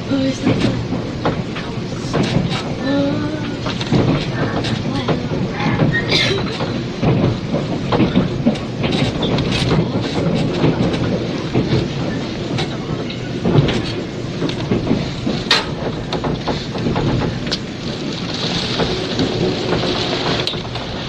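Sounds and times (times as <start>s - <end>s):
train car rumble: 0.0s - 21.0s
wheels clicking on rail joints: 0.0s - 21.0s.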